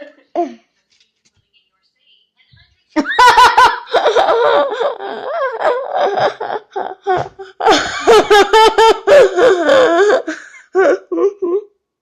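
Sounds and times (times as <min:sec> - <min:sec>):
girls laughing: 0:03.0 - 0:11.6.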